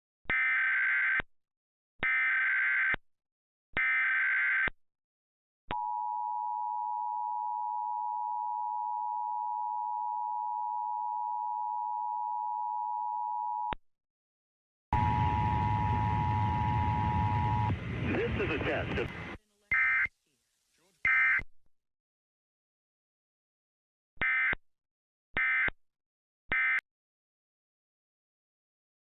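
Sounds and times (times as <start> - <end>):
two-tone attention signal: 15.0 - 17.8.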